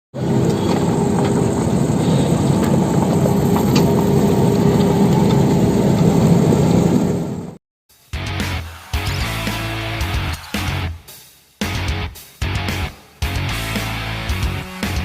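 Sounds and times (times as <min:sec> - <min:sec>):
excavator diesel engine running: 0:00.2 - 0:07.6.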